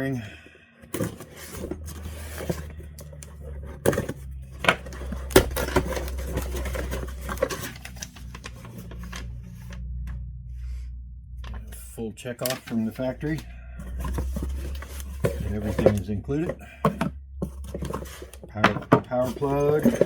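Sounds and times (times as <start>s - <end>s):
low electrical hum: 0.0s - 20.0s
packaging rustling: 1.0s - 9.4s, 12.5s - 18.6s.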